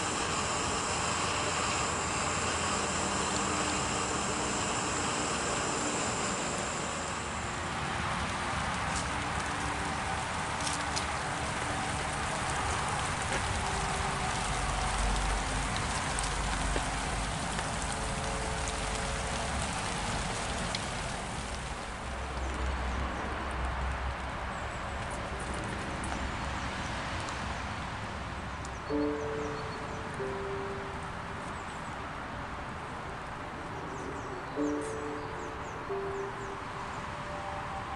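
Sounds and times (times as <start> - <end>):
low rumbling: 0.0 - 23.5
heavy rain falling: 0.0 - 37.9.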